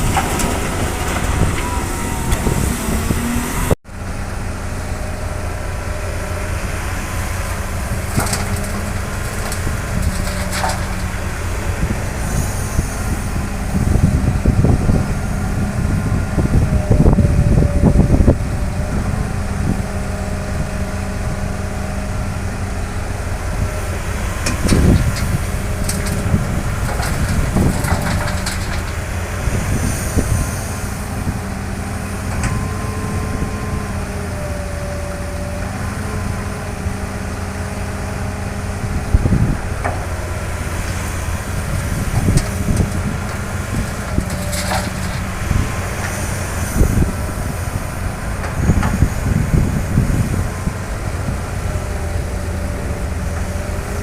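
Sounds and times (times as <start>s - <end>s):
heavy diesel machinery running: 0.0s - 54.0s
metal clanks and knocks: 24.4s - 29.0s.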